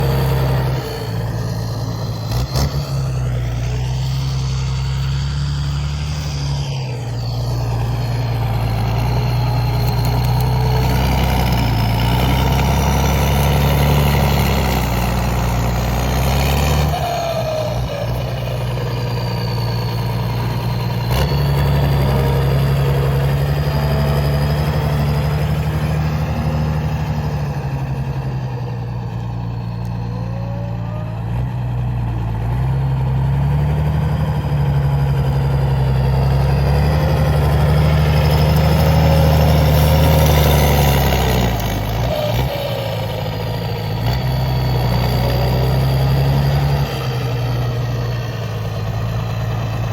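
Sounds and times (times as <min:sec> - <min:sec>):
tractor diesel engine running: 0:00.0 - 0:49.9
thin high whine: 0:03.0 - 0:10.0.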